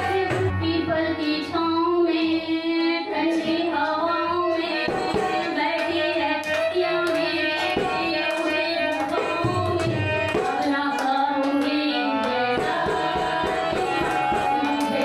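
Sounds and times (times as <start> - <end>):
devotional singing voice: 0.0 - 15.0
musical accompaniment: 7.6 - 15.0.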